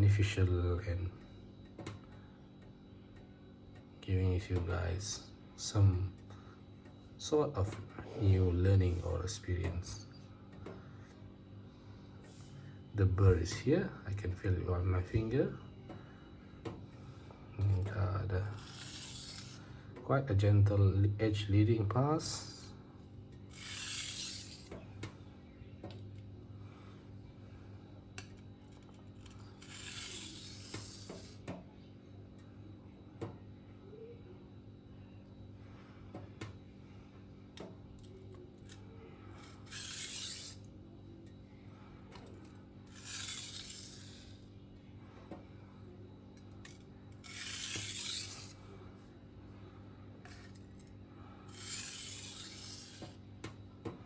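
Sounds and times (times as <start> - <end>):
knife scraping on whetstone: 18.5 - 19.6, 23.5 - 24.8, 29.2 - 31.4, 39.3 - 40.7, 42.9 - 44.4, 46.7 - 48.6, 51.5 - 53.2.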